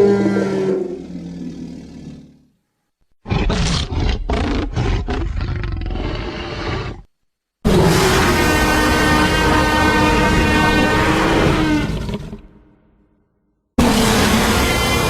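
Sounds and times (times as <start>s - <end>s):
monster roar: 3.3s - 7.0s, 13.8s - 15.0s
raspy growling roar: 3.3s - 7.1s, 7.7s - 12.6s, 13.8s - 15.0s.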